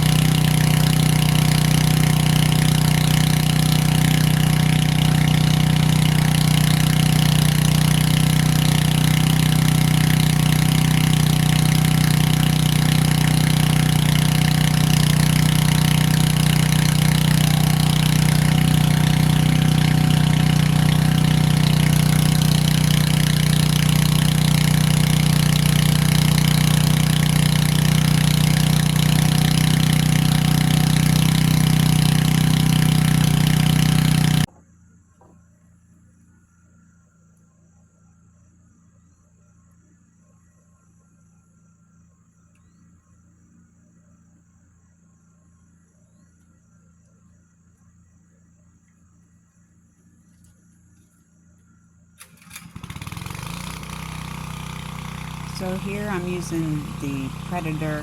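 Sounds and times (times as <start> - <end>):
water pump engine running: 0.0 - 34.5, 52.2 - 58.0.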